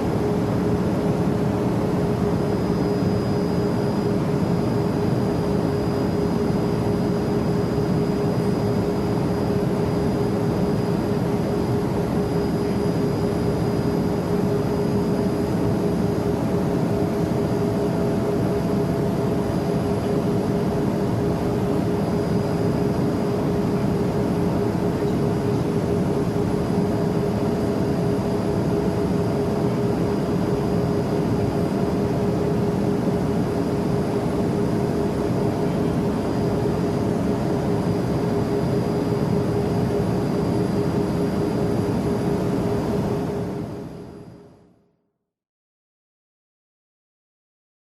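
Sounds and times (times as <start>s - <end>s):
constant humming tone: 0.0s - 44.7s
jet cabin engine drone: 0.0s - 45.0s.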